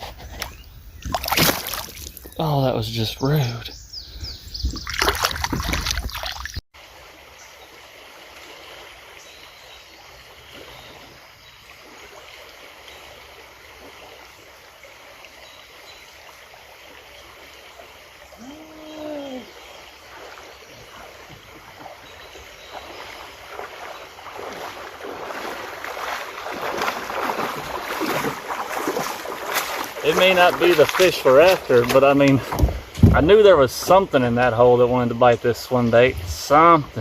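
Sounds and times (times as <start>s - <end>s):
paddle strokes splashing: 0.0s - 2.4s, 4.6s - 34.6s
river water rushing: 6.4s - 35.0s.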